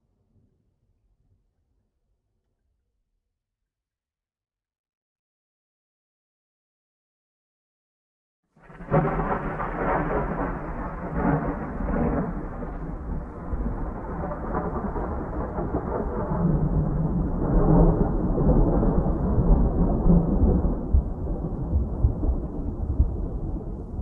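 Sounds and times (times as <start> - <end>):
rain: 8.6 - 24.0
rolling thunder: 8.6 - 24.0.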